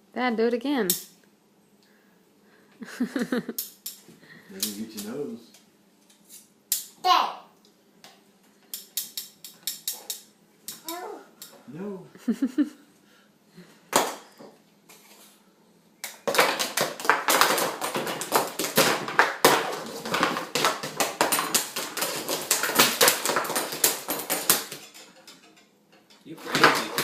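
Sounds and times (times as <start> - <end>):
rapid clattering and rattling knocks: 16.2 - 25.5.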